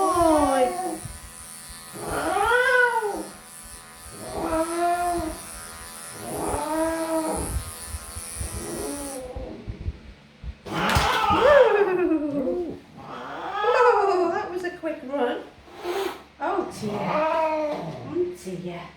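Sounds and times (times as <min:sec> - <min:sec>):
electric clippers whining: 0:00.0 - 0:11.5
cat yowling: 0:02.0 - 0:03.4, 0:10.7 - 0:14.5, 0:16.8 - 0:18.1.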